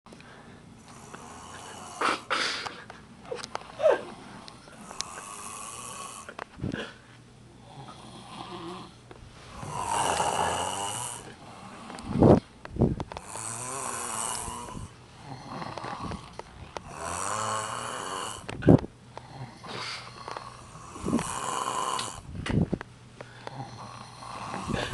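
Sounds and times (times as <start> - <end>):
person snoring: 0.8 - 2.6, 3.8 - 6.9, 7.6 - 12.3, 13.2 - 18.5, 19.2 - 22.3, 23.4 - 24.9
sharp snorts: 1.2 - 2.7.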